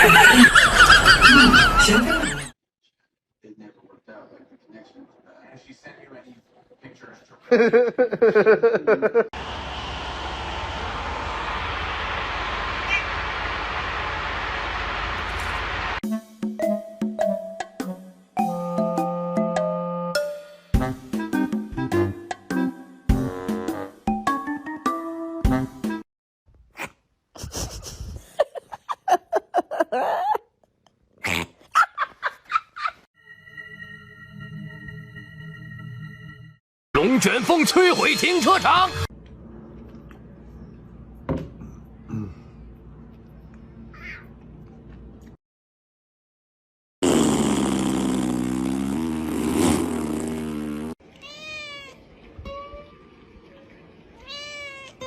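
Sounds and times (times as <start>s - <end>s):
cat meowing: 51.2s - 52.9s, 54.2s - 55.0s.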